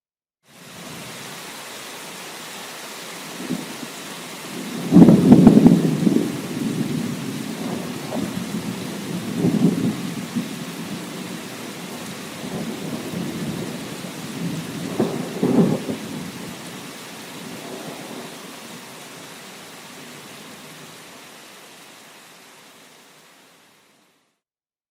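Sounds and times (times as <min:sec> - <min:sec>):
steady rain: 0:00.4 - 0:24.4
rolling thunder: 0:04.6 - 0:16.8.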